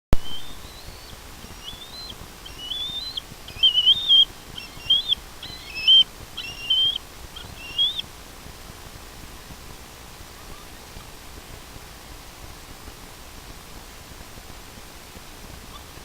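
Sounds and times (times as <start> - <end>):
eagle calling high whistled notes: 0.2 - 8.1.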